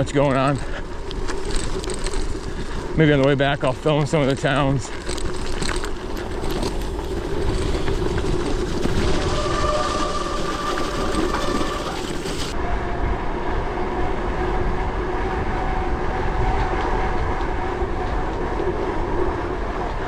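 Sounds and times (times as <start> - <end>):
tyres rumbling on road: 0.0 - 12.6
wind rushing over microphone: 0.0 - 20.0.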